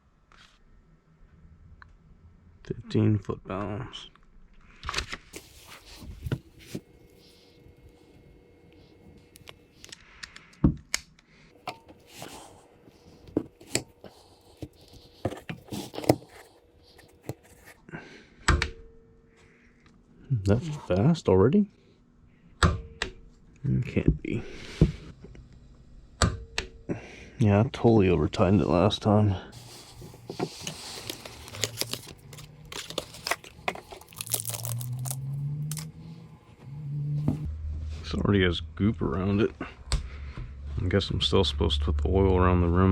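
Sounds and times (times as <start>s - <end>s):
low steady hum: 0.0s - 42.9s
plastic packaging crinkling: 29.6s - 35.9s.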